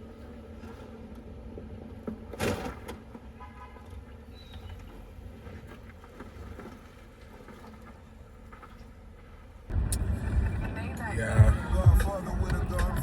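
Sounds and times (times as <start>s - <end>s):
car engine rumbling: 8.0s - 13.0s.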